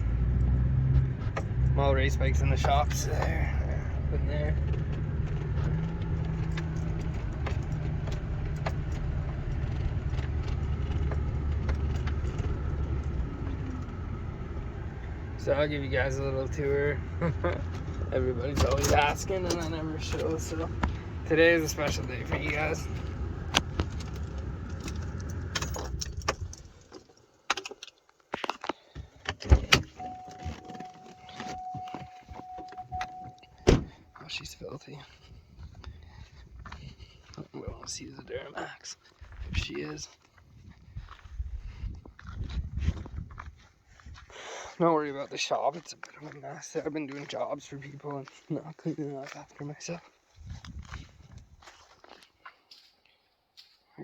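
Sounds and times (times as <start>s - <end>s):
vehicle engine humming: 0.0s - 27.4s, 29.7s - 37.3s
light clicks and rattles: 17.7s - 21.1s, 21.8s - 32.8s
steady electronic tone: 30.0s - 33.6s.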